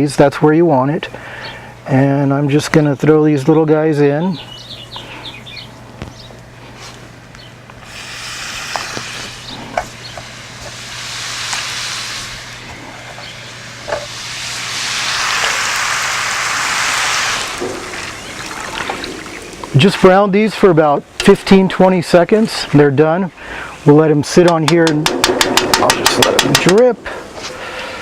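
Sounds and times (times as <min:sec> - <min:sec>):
food sizzling in deep-fry oil: 0:07.9 - 0:19.6.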